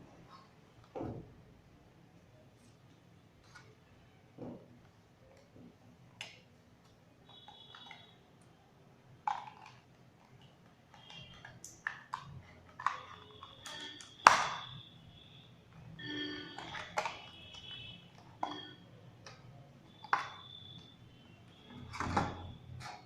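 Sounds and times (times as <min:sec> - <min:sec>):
clicks and taps on packaging: 0:09.3 - 0:14.8, 0:20.0 - 0:20.8
plastic squeaks: 0:15.9 - 0:18.8.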